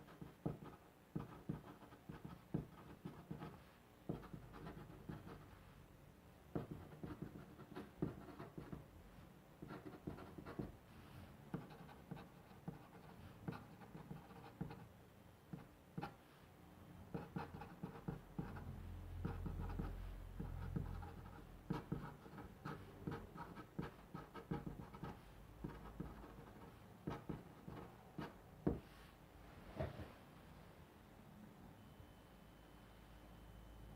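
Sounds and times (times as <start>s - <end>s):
pen scratching on paper: 0.0s - 5.6s, 6.6s - 8.9s, 9.6s - 10.8s, 11.5s - 14.9s, 17.1s - 28.8s.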